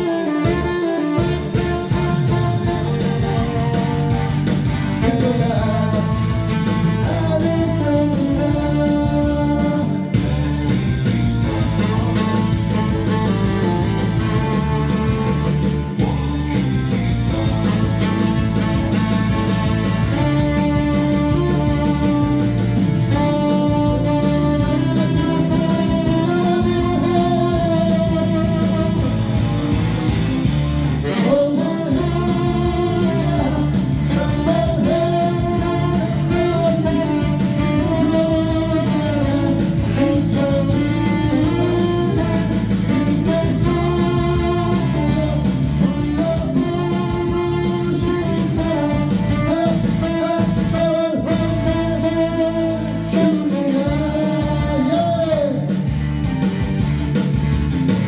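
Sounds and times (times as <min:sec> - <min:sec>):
saxophone melody: 0:00.0 - 0:56.1
backing track with guitar: 0:00.0 - 0:58.0
band accompaniment: 0:00.0 - 0:58.0.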